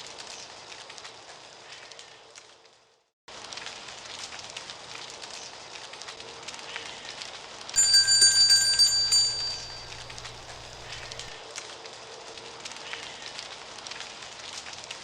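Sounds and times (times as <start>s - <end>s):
ringing bell-like tone: 7.8s - 11.4s.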